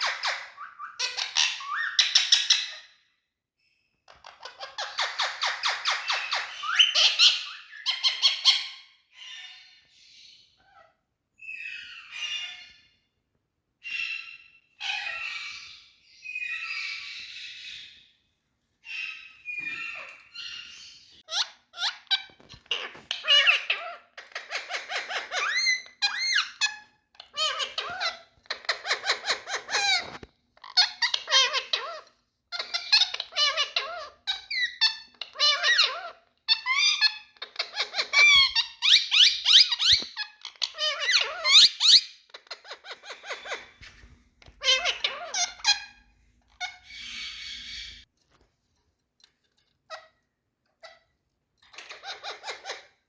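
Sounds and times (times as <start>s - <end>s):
parrot squawking: 0.0s - 2.9s, 4.1s - 9.9s, 13.8s - 18.0s, 18.8s - 43.8s, 44.4s - 48.1s, 51.7s - 53.0s.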